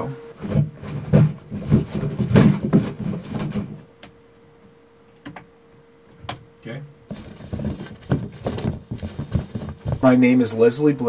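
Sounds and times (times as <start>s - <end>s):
props thudding and knocking: 0.4s - 3.8s, 7.1s - 10.2s.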